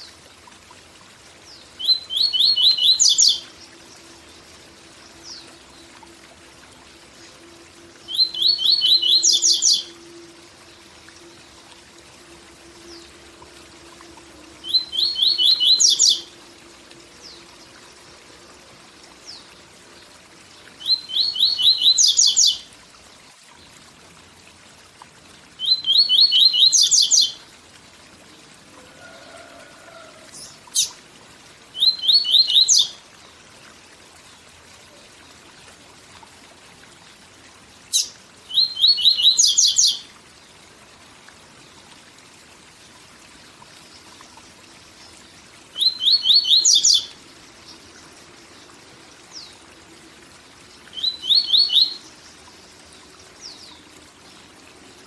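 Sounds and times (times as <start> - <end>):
bird singing: 1.5 - 4.0, 8.0 - 10.3, 14.4 - 16.3, 20.8 - 22.6, 25.6 - 27.4, 31.8 - 33.0, 37.9 - 40.1, 45.7 - 47.8, 50.9 - 52.1
waterfall rushing: 28.7 - 30.8.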